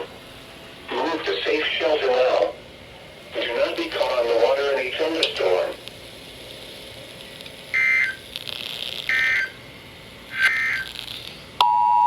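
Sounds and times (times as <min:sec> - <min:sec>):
warbling digital data tones: 0:07.7 - 0:08.2, 0:08.9 - 0:09.6, 0:10.3 - 0:11.1
two-tone attention signal: 0:11.6 - 0:12.0.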